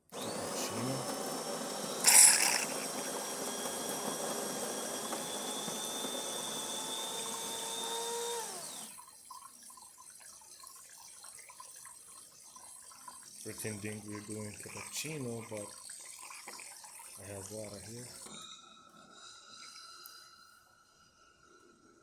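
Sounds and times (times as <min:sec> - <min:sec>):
espresso machine frothing hiss: 0:00.1 - 0:08.9.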